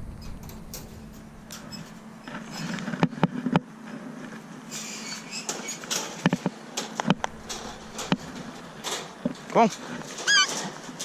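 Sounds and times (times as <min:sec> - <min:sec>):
trap clicks and rattles: 0:05.4 - 0:11.0.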